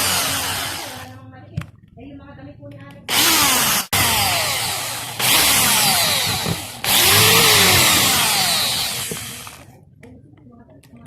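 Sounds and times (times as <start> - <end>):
power tool whirring: 0.0 - 1.1, 3.1 - 9.7.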